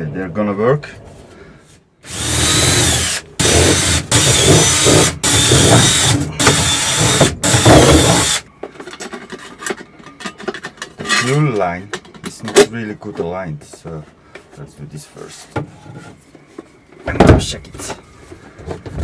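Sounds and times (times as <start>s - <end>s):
power drill running: 2.0s - 8.4s.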